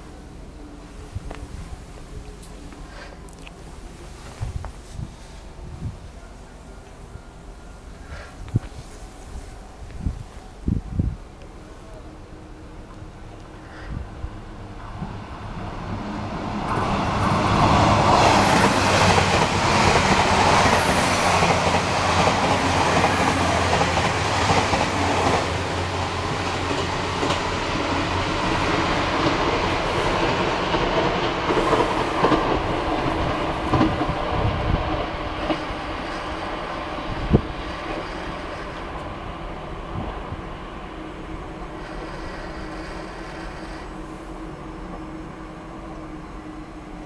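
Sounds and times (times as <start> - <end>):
train rumbling on rails: 0.0 - 47.0
clicks of wheels on track: 41.8 - 44.0.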